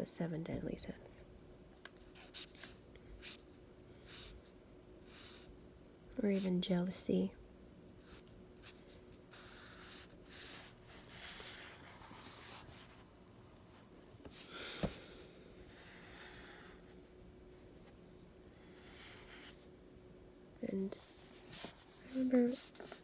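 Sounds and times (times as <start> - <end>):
drawing tool scratching on paper: 8.1 - 13.0, 15.6 - 17.0, 18.6 - 19.6.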